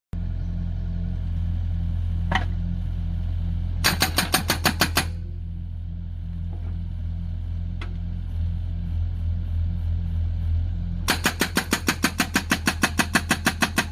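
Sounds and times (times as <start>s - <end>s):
excavator diesel engine running: 0.2s - 13.9s
hydraulic breaker hammering logs: 3.8s - 5.2s, 11.0s - 13.9s.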